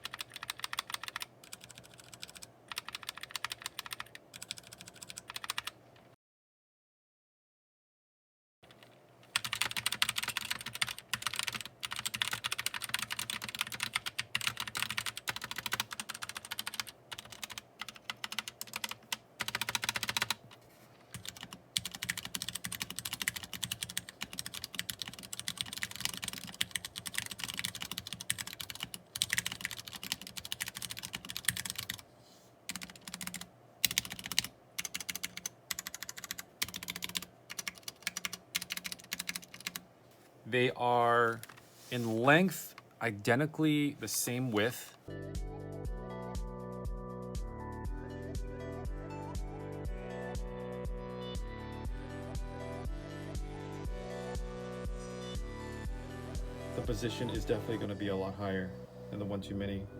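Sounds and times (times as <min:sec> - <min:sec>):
mechanical keyboard typing: 0:00.0 - 0:05.8, 0:08.7 - 0:20.4, 0:21.1 - 0:32.0, 0:32.7 - 0:39.8.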